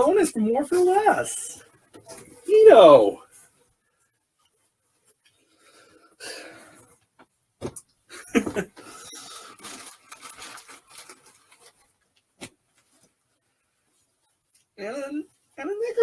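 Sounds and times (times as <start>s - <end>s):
packaging rustling and crinkling: 8.8s - 13.2s.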